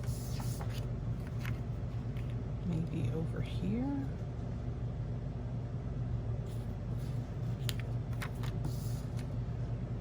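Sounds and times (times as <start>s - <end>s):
paper rustle: 0.1s - 2.1s.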